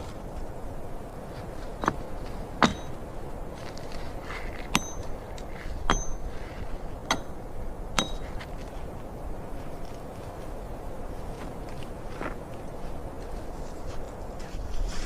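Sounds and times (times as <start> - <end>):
steady background hiss: 0.0 - 15.0
high metallic ring: 2.6 - 3.0, 4.7 - 5.3, 5.9 - 8.4
sharp knocks: 2.6 - 3.0, 4.7 - 5.2, 5.9 - 8.5.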